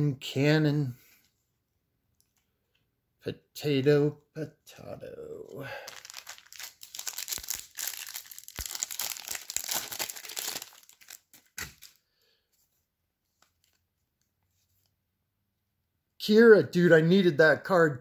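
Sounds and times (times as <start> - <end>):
foil wrapper tearing and crinkling: 5.8 - 12.0.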